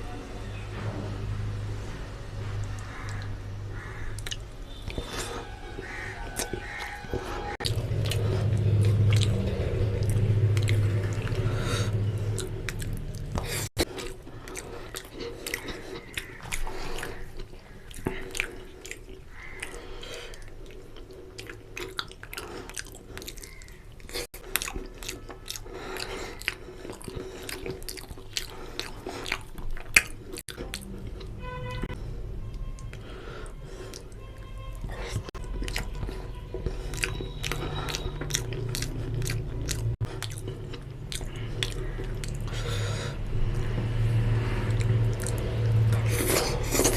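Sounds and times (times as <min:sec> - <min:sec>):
low hum: 0:00.0 - 0:13.8
wet chewing and biting: 0:02.6 - 0:31.4, 0:33.8 - 0:46.9.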